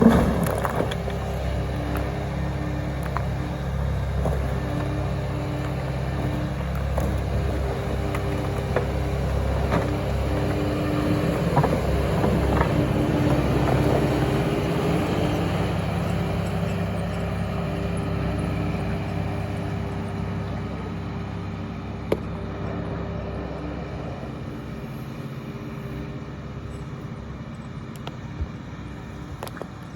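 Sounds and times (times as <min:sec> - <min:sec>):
rocks knocking and clunking: 0:00.0 - 0:17.2, 0:22.0 - 0:22.7
excavator engine running: 0:00.0 - 0:29.9.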